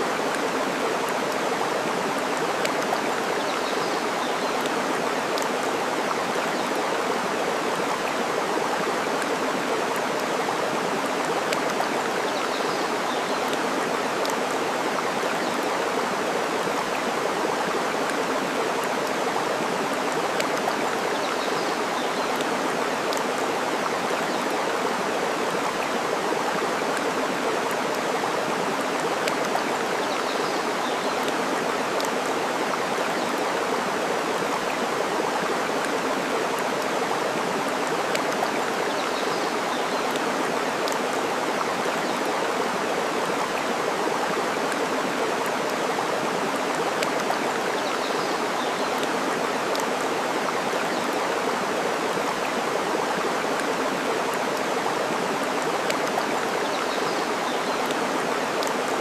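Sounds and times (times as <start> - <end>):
flowing water: 0.0 - 59.0.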